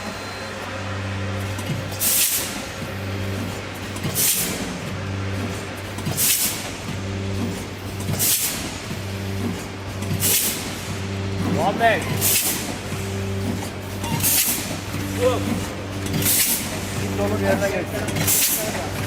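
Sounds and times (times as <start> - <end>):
packaging machine motor hum: 0.0 - 19.0
pneumatic air hiss: 2.0 - 2.6.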